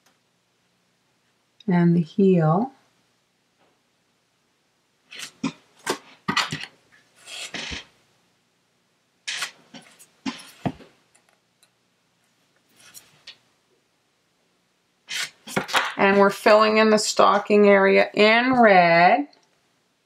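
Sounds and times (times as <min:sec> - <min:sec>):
rustles scrapes and light knocks: 0:12.6 - 0:13.4.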